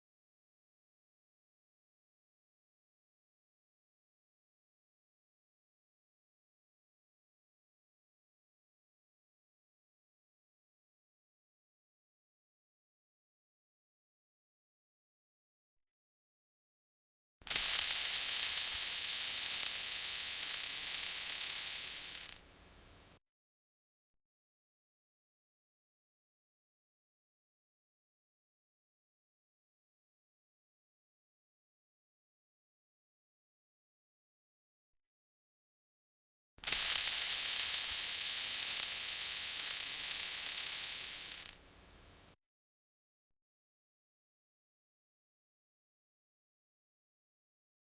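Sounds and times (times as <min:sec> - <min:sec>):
welding sizzling hiss: 0:17.5 - 0:22.4, 0:36.6 - 0:41.6.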